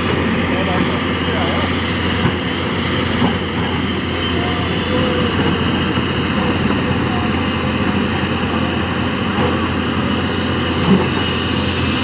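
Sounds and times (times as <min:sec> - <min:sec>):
heavy machinery diesel engine: 0:00.0 - 0:12.0.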